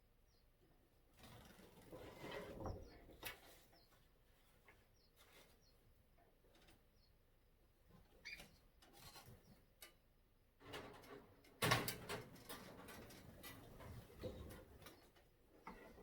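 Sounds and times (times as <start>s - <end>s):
birds chirping: 0.2s - 0.5s.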